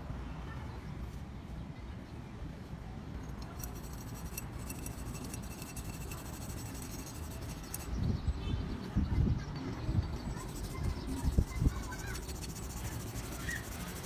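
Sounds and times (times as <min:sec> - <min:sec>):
light scratching: 0:03.3 - 0:08.0, 0:10.1 - 0:14.0.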